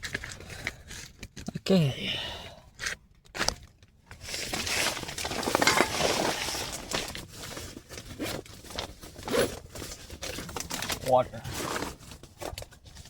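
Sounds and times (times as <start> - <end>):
rustling and crinkling: 0.0 - 1.6, 2.8 - 13.0.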